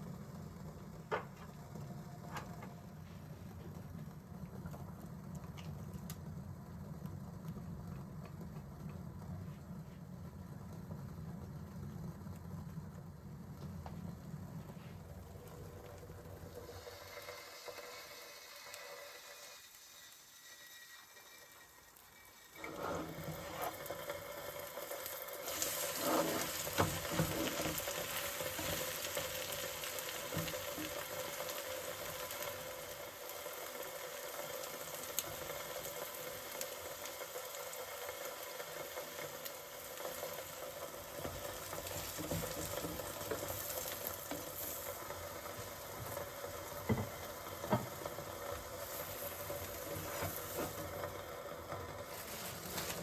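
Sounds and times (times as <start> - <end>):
food sizzling in oil: 15.6 - 53.0.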